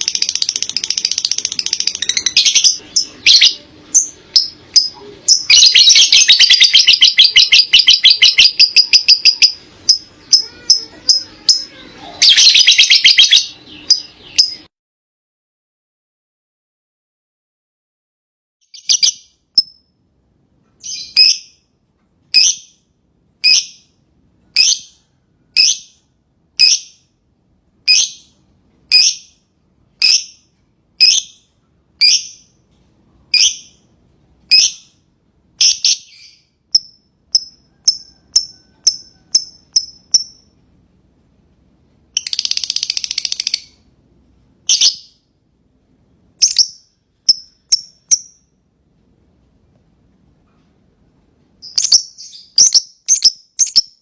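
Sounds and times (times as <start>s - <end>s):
bird chirping and trilling: 0.0s - 14.7s, 18.6s - 19.9s, 20.8s - 21.6s, 22.3s - 22.8s, 23.4s - 27.1s, 27.9s - 29.4s, 30.0s - 30.4s, 31.0s - 32.6s, 33.3s - 33.9s, 34.5s - 35.0s, 35.6s - 40.5s, 42.2s - 43.8s, 44.7s - 45.2s, 46.4s - 48.5s, 51.6s - 54.0s.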